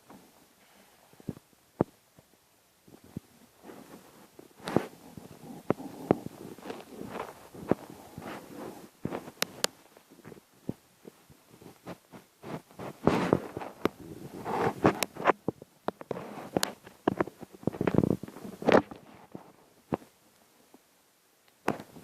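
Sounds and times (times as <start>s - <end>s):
man snoring: 5.1s - 7.0s.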